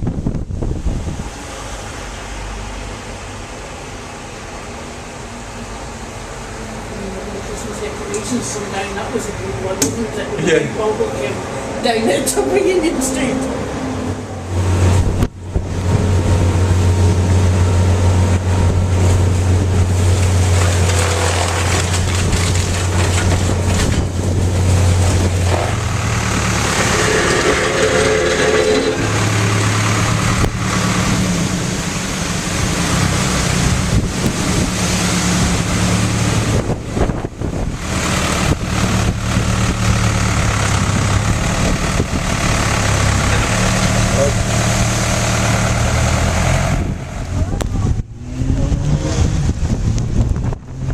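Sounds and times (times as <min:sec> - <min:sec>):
gusty wind noise: 0:00.0 - 0:02.1, 0:11.4 - 0:20.6, 0:21.6 - 0:40.2, 0:46.4 - 0:50.9
vehicle engine idling: 0:21.4 - 0:34.4, 0:35.3 - 0:48.2.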